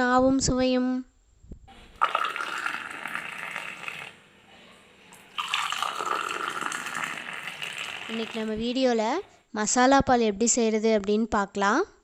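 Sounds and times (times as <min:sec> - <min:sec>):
liquid being poured: 0:01.7 - 0:09.4.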